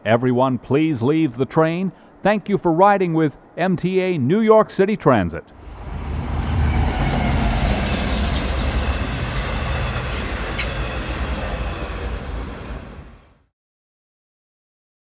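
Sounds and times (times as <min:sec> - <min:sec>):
wheel squeaks: 0:05.6 - 0:13.2
subway train rumbling: 0:05.6 - 0:13.4.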